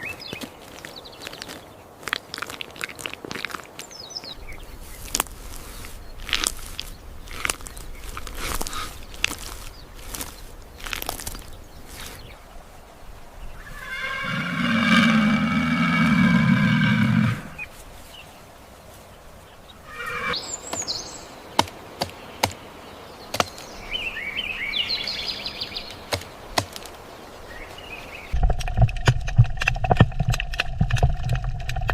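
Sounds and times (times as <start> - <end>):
drawn-out animal call: 13.6 - 17.6, 19.8 - 20.4
higher chirping calls: 19.5 - 26.4.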